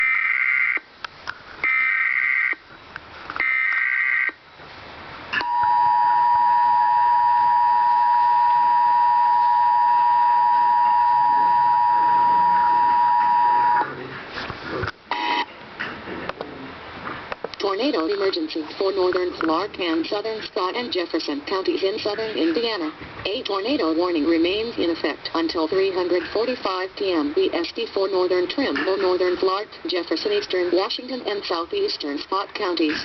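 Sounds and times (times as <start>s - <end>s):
two-tone attention signal: 5.4s - 13.9s.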